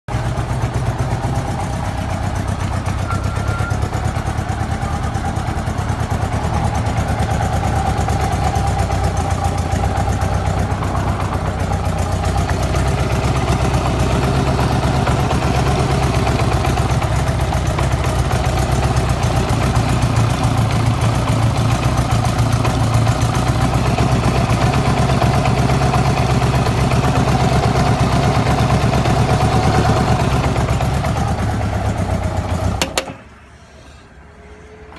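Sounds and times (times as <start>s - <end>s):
motorcycle engine idling with knocking: 0.1s - 33.4s.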